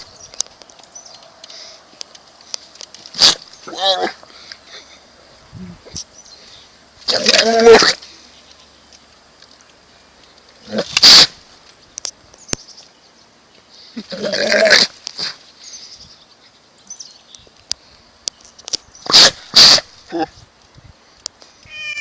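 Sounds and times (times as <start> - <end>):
animal calling: 21.7 - 22.0.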